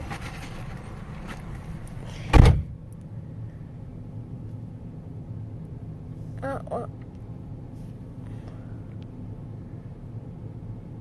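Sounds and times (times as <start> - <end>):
vehicle running hum: 0.0 - 11.0
car door shutting: 2.2 - 2.8.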